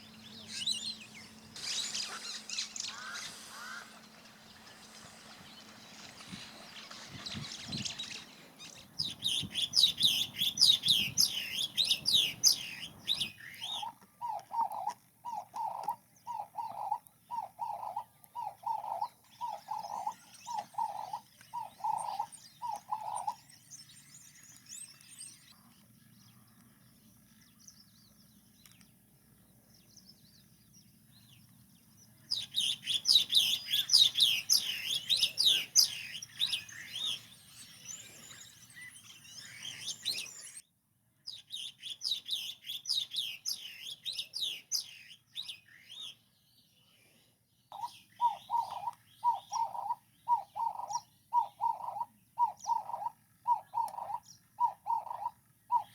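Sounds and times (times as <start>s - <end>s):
short low bird calls: 0.0s - 4.1s, 47.7s - 55.9s
birds chirping and twittering: 0.0s - 55.9s.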